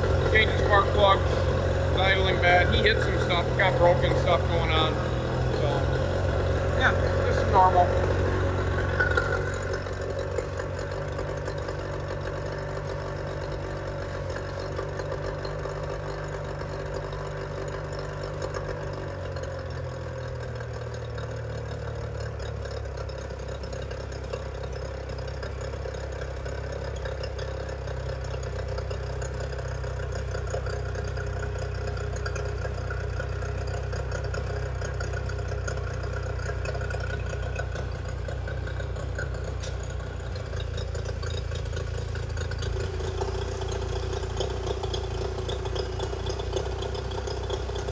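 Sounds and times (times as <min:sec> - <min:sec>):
outboard motor idling: 0:00.0 - 0:47.9.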